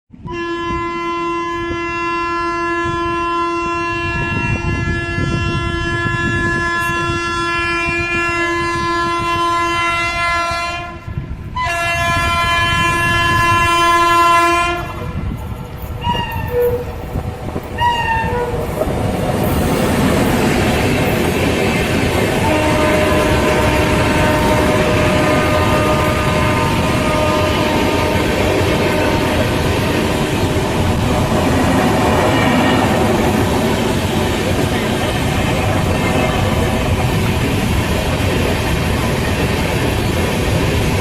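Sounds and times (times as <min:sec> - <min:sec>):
locomotive horn blasts: 0:00.2 - 0:15.2, 0:16.0 - 0:17.0, 0:17.8 - 0:18.6, 0:22.3 - 0:31.0, 0:31.7 - 0:33.9
train rushing past: 0:02.6 - 0:41.0.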